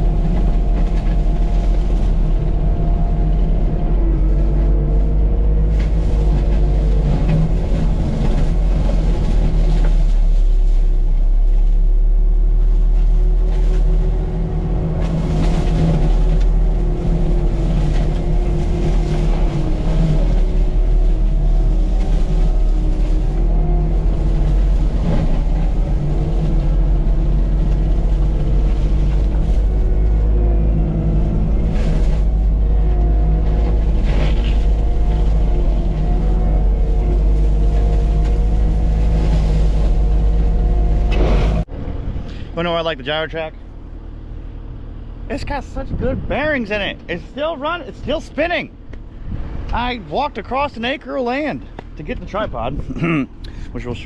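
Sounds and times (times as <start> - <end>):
diesel engine running hard: 0.0 - 54.0
mulcher head whine: 11.5 - 54.0.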